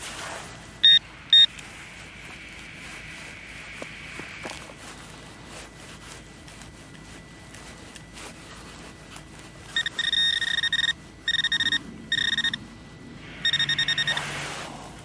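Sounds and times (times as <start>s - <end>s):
metal detector beeping: 0.8s - 1.6s, 9.7s - 12.6s, 13.3s - 14.4s.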